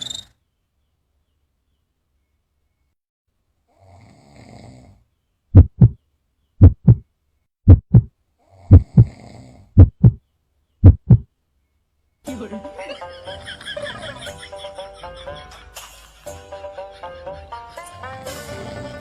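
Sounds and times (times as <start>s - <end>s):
person snoring: 3.7s - 5.0s, 8.5s - 9.7s
low thumps in pairs: 5.6s - 6.0s, 6.6s - 7.0s, 7.7s - 8.1s, 8.7s - 9.1s, 9.8s - 10.2s, 10.8s - 11.3s
rasping breaths: 8.4s - 10.2s.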